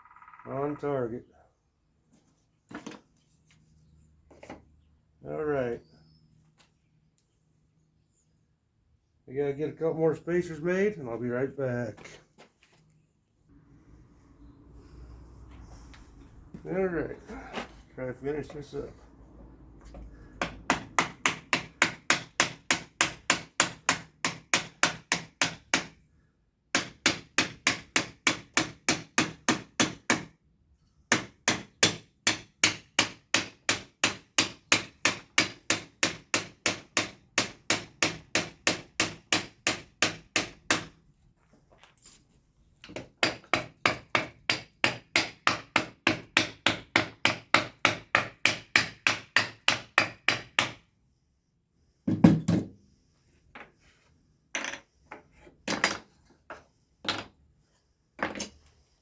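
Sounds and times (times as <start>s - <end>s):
rapid striking in woodworking shop: 20.1s - 26.0s, 26.7s - 30.3s, 31.1s - 41.0s, 42.9s - 50.9s, 52.1s - 52.8s.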